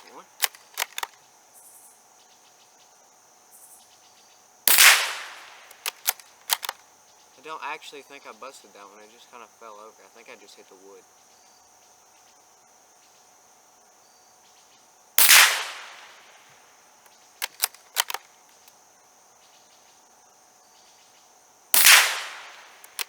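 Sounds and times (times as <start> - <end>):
rifle bolt clicks: 0.0 - 1.2, 4.7 - 6.8, 15.2 - 16.1, 17.4 - 18.7, 21.8 - 23.0
rifle shots: 0.0 - 1.2, 4.7 - 6.8, 15.2 - 16.3, 17.4 - 18.3, 21.8 - 23.0
insect drone: 0.0 - 23.0.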